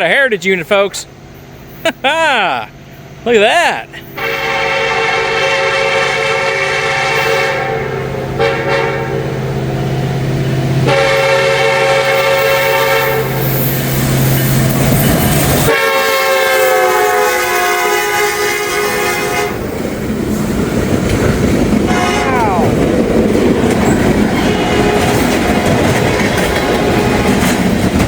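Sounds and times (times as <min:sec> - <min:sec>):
locomotive air horn: 0:04.1 - 0:09.5, 0:10.8 - 0:13.7, 0:15.7 - 0:19.6, 0:21.9 - 0:22.7, 0:24.3 - 0:27.6.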